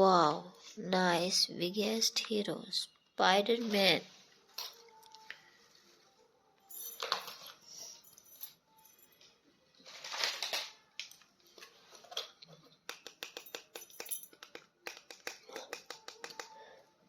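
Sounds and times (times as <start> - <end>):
packaging rustle: 9.8 - 10.9.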